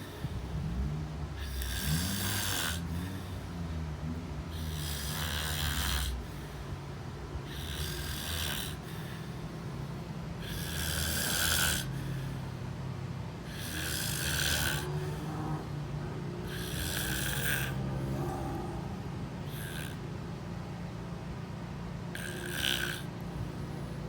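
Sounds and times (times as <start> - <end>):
person snoring: 0.0 - 9.6, 10.4 - 12.4, 13.4 - 15.8, 16.4 - 20.0, 22.1 - 23.8.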